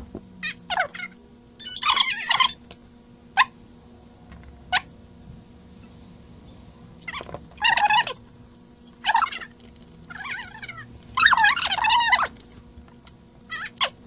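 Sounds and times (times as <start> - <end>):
faint steady hum: 0.0 - 14.0
warbling animal calls: 0.4 - 2.6, 7.0 - 8.2, 8.9 - 12.4.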